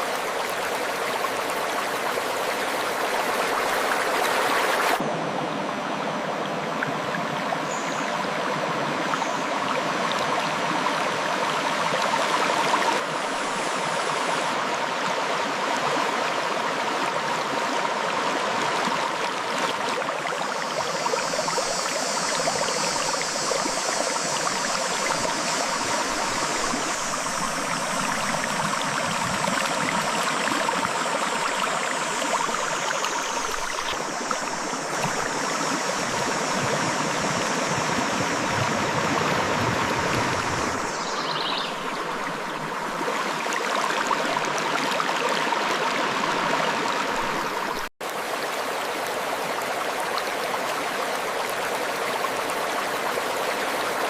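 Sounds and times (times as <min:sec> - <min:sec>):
river flowing over rocks: 0:41.8 - 0:54.0.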